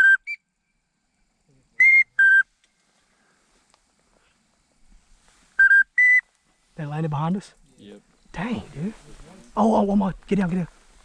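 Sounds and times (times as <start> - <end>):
duck whistle call: 0.0 - 0.4, 1.8 - 2.5, 5.6 - 6.2.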